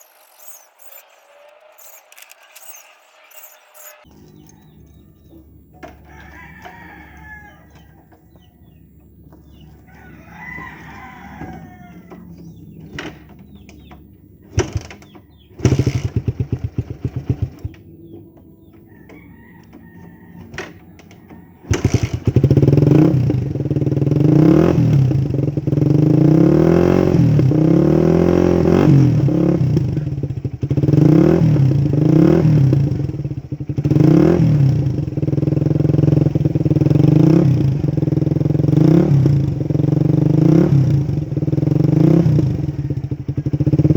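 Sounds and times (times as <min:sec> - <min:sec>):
rooster crowing: 0:00.0 - 0:12.8, 0:18.2 - 0:24.8
motorcycle engine revving: 0:00.0 - 0:43.9
rapid exhaust pulses: 0:11.4 - 0:18.2.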